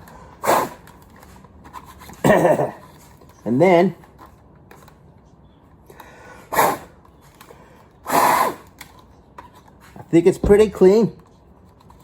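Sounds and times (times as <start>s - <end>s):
puffs of breath: 5.9s - 8.7s.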